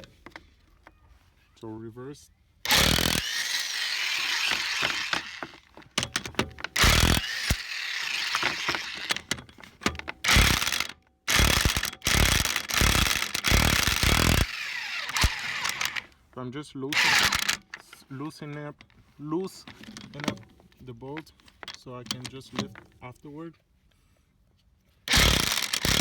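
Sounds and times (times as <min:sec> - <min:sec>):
impact wrench hammering: 0:02.7 - 0:16.1, 0:17.0 - 0:17.6, 0:25.1 - 0:26.0.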